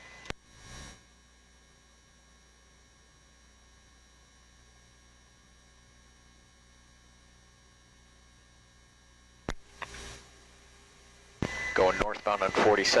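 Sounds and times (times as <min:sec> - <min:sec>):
low electrical hum: 0:00.0 - 0:13.0
radio click: 0:09.5 - 0:10.2, 0:11.4 - 0:13.0
radio hiss burst: 0:09.5 - 0:10.3, 0:11.4 - 0:13.0
faint radio tones: 0:11.1 - 0:13.0.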